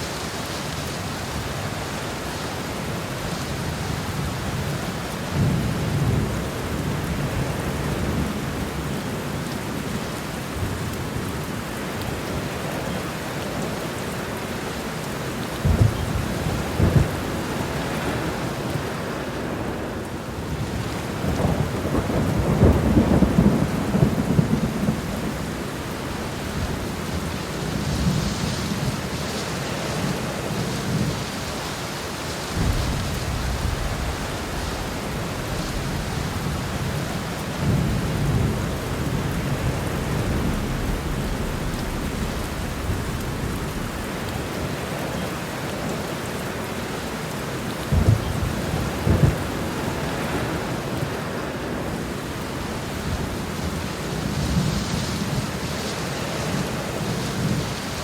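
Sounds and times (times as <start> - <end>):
heavy rain falling: 0.0 - 58.0
loud thunder claps: 15.6 - 17.4, 32.5 - 44.9, 47.9 - 50.7
low thunder rumbling: 15.6 - 19.9, 20.6 - 29.2, 32.5 - 45.6, 47.9 - 51.9.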